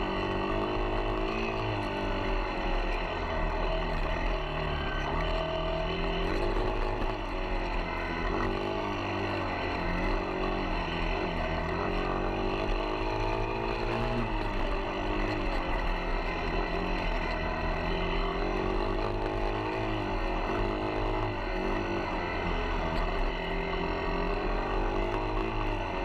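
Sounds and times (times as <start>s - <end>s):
off-road vehicle engine running: 0.0s - 26.0s.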